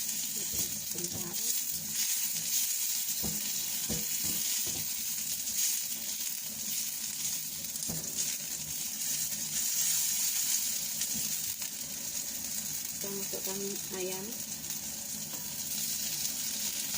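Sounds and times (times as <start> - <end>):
vegetables sizzling in hot oil: 0.0 - 16.9
pan knocking while stirred: 0.4 - 2.5, 3.1 - 5.1, 7.8 - 8.6.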